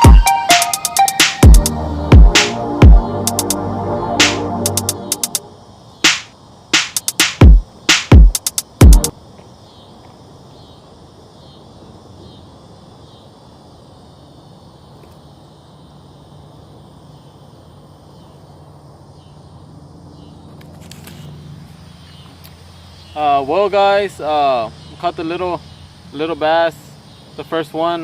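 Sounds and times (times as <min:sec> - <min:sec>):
insect chirps: 0:00.0 - 0:28.0.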